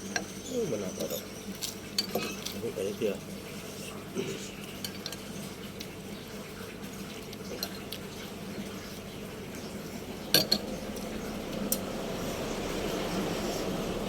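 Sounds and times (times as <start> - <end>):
cutlery and dishes clinking: 1.0 - 2.6
steady low hum: 8.2 - 14.0.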